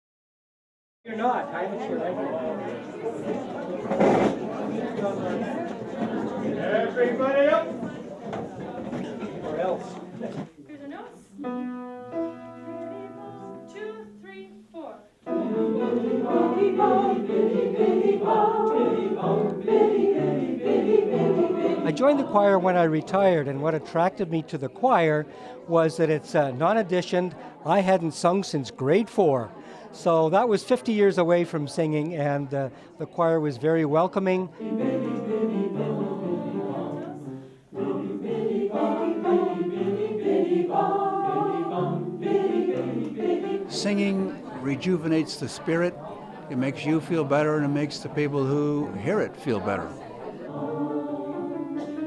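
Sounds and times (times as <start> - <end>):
choir singing: 1.1 - 10.5, 11.2 - 28.1, 34.4 - 52.0.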